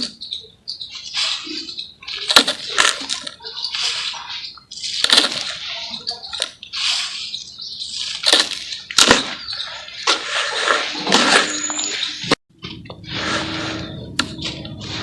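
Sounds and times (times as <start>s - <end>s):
sharp cracks: 8.0s - 9.4s.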